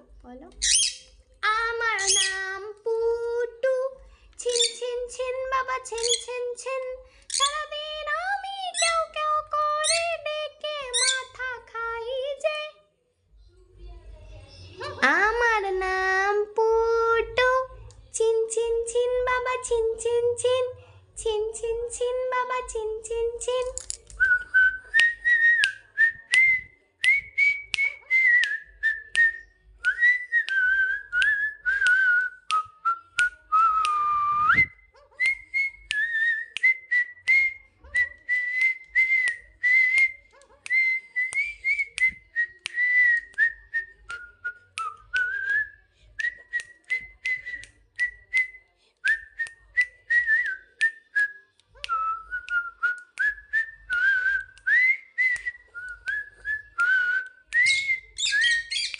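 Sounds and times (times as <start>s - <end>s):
whistled tune: 24.2s - 58.9s.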